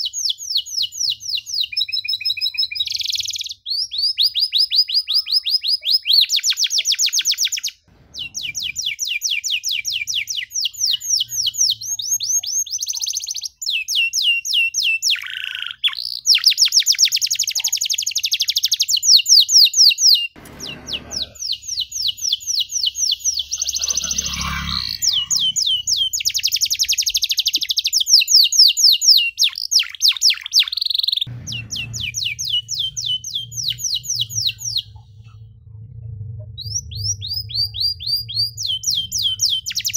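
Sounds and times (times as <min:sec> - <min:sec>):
canary singing fast trills: 0:00.0 - 0:35.0, 0:36.6 - 0:39.9
faint low hum: 0:07.9 - 0:08.9, 0:31.3 - 0:39.9.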